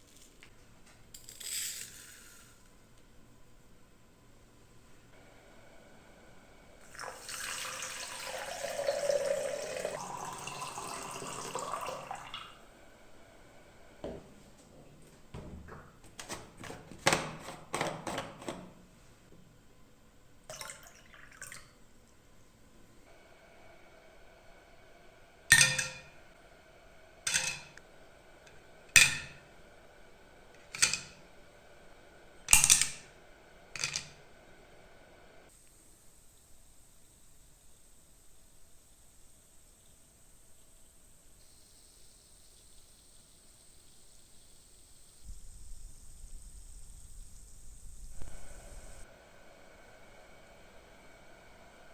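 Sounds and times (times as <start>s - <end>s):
water running into container: 6.8s - 12.7s, 20.5s - 21.8s.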